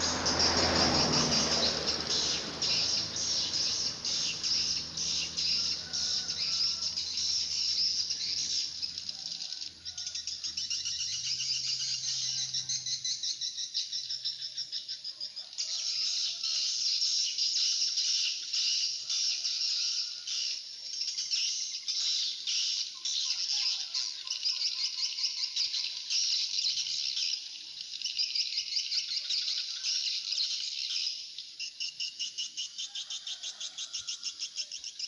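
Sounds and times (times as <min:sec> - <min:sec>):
insects chirping trills: 0:00.0 - 0:15.0.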